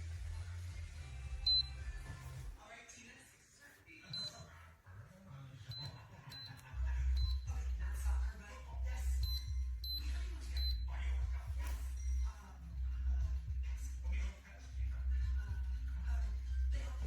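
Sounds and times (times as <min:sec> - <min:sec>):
short high electronic beeps: 0:09.2 - 0:10.9.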